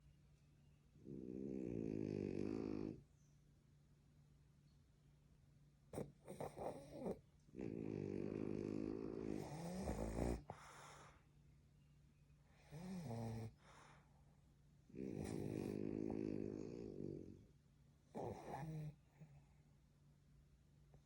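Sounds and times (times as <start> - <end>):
dog snoring: 1.0 - 3.0, 5.9 - 11.2, 12.5 - 14.0, 14.9 - 17.4, 18.1 - 19.4.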